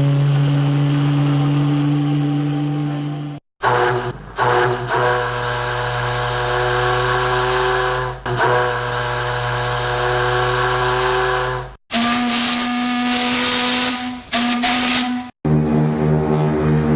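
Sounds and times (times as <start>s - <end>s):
ship's horn blasts: 0.0s - 16.9s.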